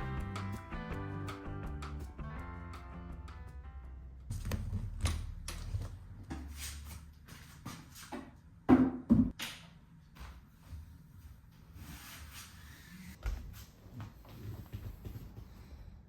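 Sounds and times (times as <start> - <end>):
background music: 0.0 - 5.7.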